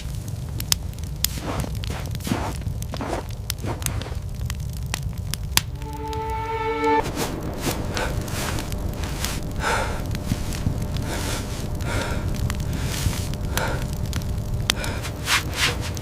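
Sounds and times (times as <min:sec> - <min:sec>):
low rumble: 0:04.2 - 0:16.0
held tone: 0:05.7 - 0:08.4
person breathing hard: 0:07.4 - 0:16.0.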